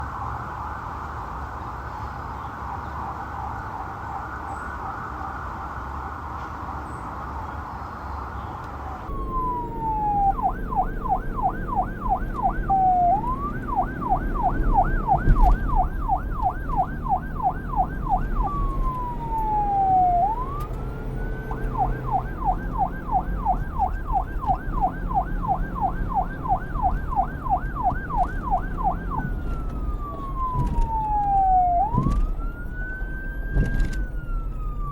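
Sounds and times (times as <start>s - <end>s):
electronic police siren: 9.0s - 34.9s
low rumble: 9.1s - 34.9s.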